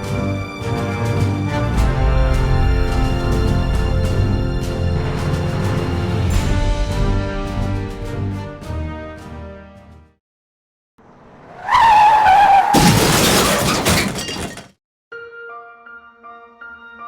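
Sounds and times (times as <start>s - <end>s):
car tires screeching: 11.0s - 14.2s
loud crash with shattering: 12.5s - 14.8s.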